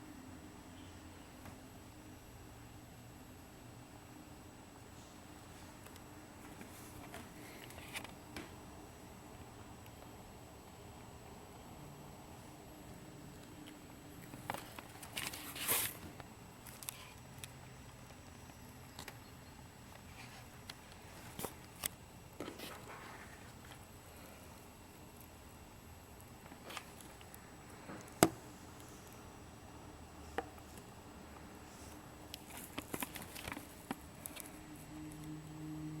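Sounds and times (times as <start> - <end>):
faint low hum: 0.0 - 36.0.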